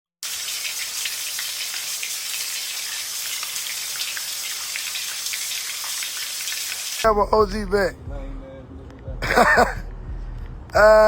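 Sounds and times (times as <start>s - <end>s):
crackling hiss with ticks: 0.4s - 7.0s.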